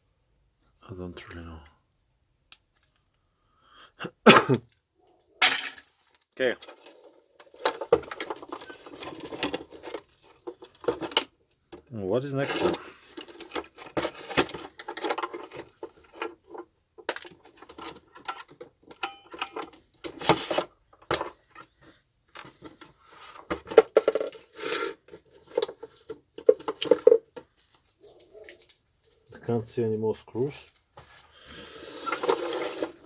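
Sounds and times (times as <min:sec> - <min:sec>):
plastic parts clicking and rattling: 0:05.4 - 0:28.8
plastic scraping: 0:06.6 - 0:11.3, 0:12.4 - 0:28.8, 0:31.4 - 0:33.0.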